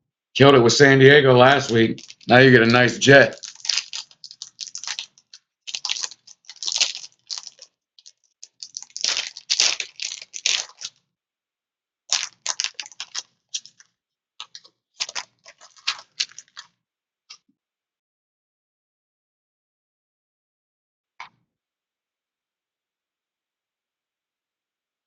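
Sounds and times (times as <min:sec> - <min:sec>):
trading cards rustling and crackling: 0:01.4 - 0:11.0, 0:12.1 - 0:16.7.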